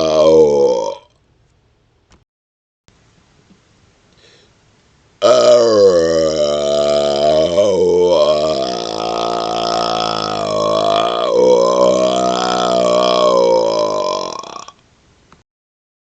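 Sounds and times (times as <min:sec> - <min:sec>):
man burping: 0:00.0 - 0:01.2, 0:05.2 - 0:14.8.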